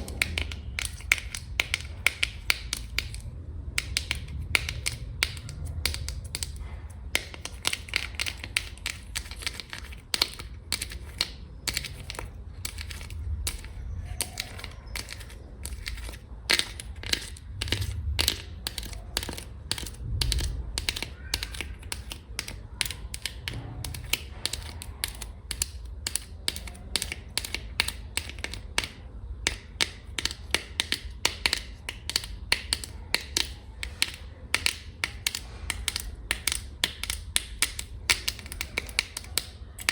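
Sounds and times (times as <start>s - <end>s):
low handling rumble: 0.0s - 1.9s
fingernails tapping on hard surface: 0.0s - 39.9s.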